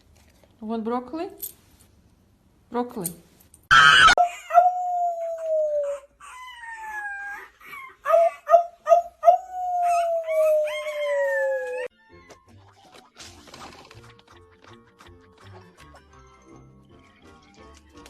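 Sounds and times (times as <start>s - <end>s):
dog howling: 3.7s - 11.9s.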